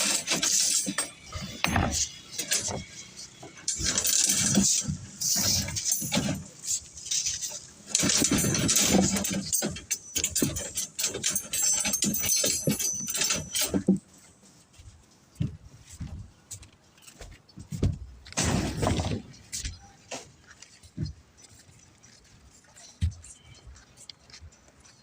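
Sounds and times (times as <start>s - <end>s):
steel rods clinking and rattling: 0.0s - 14.2s
high metallic ringing: 9.4s - 13.8s.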